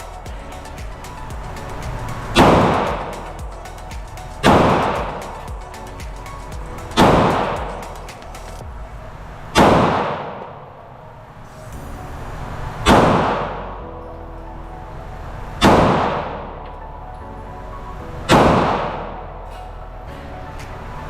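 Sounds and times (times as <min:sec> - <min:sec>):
pistol shots echoing: 0:09.5 - 0:10.7.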